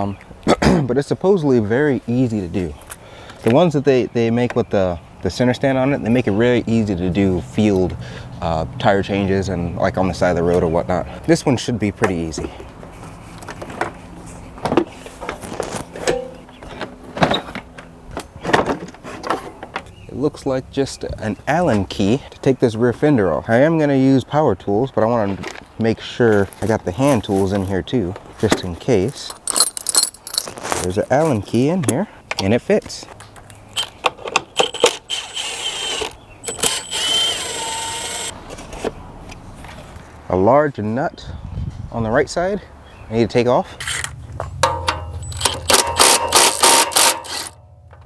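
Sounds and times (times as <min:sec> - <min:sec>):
low steady hum: 0:14.1 - 0:22.4
knocks and clicks of handling: 0:14.6 - 0:19.9, 0:43.9 - 0:48.0
impact driver motor spinning: 0:34.6 - 0:38.4, 0:45.2 - 0:47.6
metallic tool clicks: 0:43.9 - 0:47.6.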